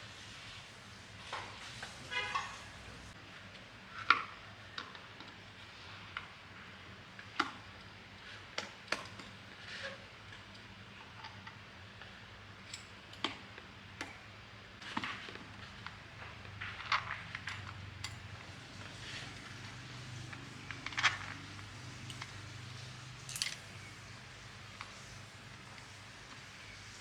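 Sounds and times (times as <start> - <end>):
tools and parts clicking: 12.6 - 14.2, 16.9 - 19.6, 20.3 - 24.1.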